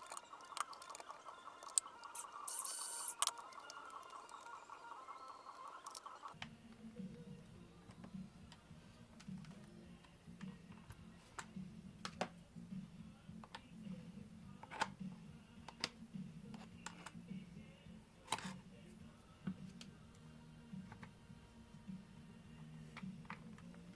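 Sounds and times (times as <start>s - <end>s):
small parts clicking and tapping: 0.0s - 6.4s.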